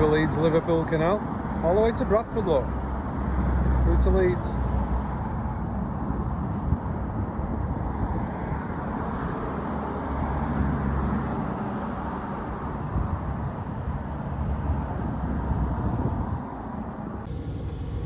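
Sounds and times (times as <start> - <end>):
outdoor low rumbling noise: 15.8 - 18.0.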